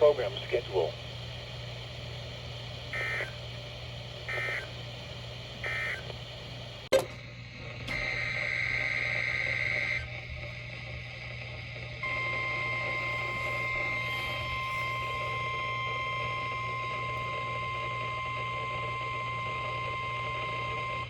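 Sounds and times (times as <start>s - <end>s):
buzzy digital chirps: 2.9s - 3.4s, 4.2s - 4.8s, 5.6s - 6.1s, 12.0s - 16.6s
steady high tone: 12.0s - 17.3s.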